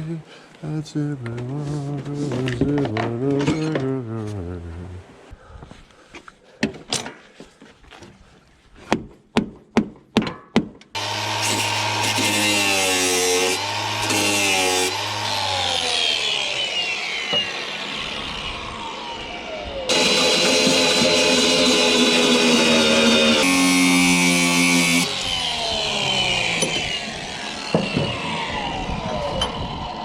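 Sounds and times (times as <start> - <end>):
power tool running: 11.0 - 30.0.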